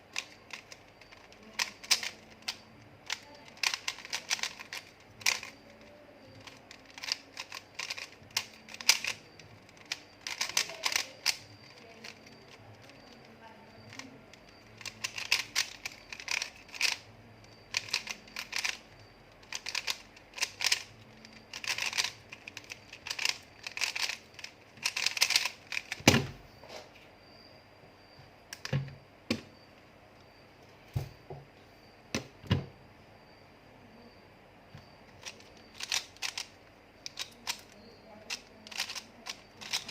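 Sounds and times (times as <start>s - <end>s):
sharp clicking and rattling: 19.4s - 26.3s, 35.2s - 39.9s.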